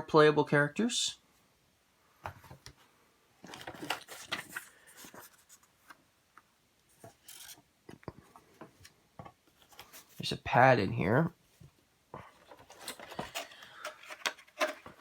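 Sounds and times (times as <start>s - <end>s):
cardboard game pieces handled: 3.4s - 6.0s, 6.9s - 8.0s, 12.3s - 15.0s.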